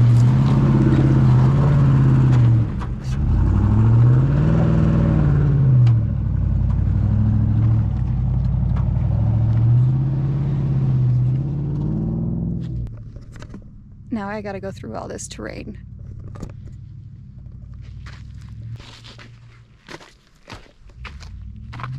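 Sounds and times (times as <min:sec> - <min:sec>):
car engine revving: 0:00.0 - 0:12.9, 0:21.0 - 0:21.9.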